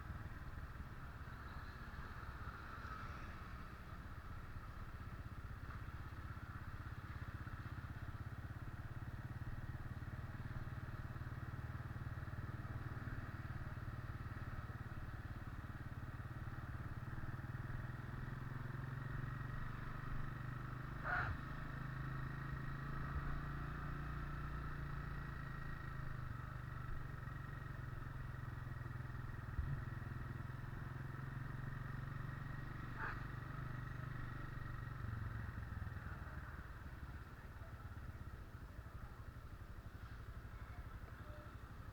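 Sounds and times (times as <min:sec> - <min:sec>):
vehicle engine running: 0:00.0 - 0:41.9.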